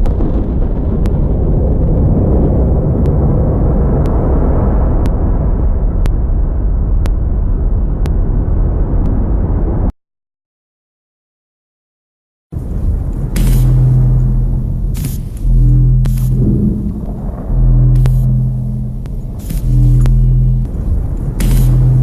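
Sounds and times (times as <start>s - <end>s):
deep rumbling drone: 0.0s - 9.9s, 12.6s - 22.0s
faint ticking: 12.9s - 22.0s.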